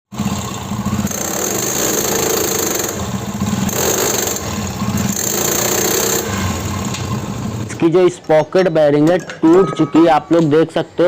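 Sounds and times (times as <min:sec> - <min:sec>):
motorcycle engine running: 0:00.1 - 0:07.8.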